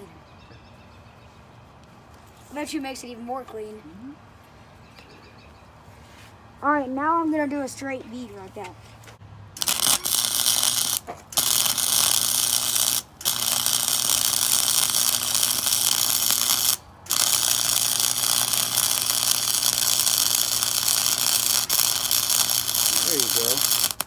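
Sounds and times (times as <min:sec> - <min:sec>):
welding arc crackling and hissing: 0:09.6 - 0:24.0.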